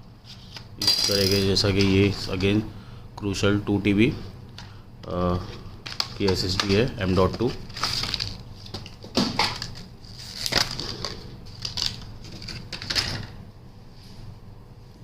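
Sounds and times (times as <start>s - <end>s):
plastic packaging crackling: 5.8s - 13.0s.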